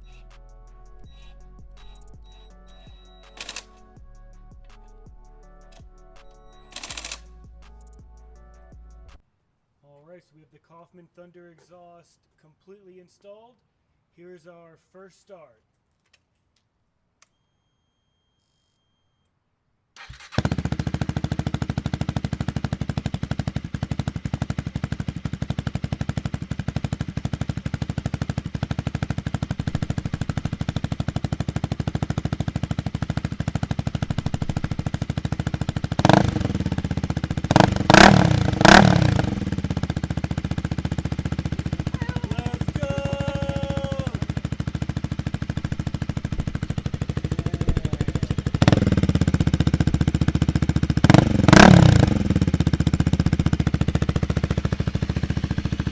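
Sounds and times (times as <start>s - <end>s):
motorcycle engine idling: 20.0s - 55.9s.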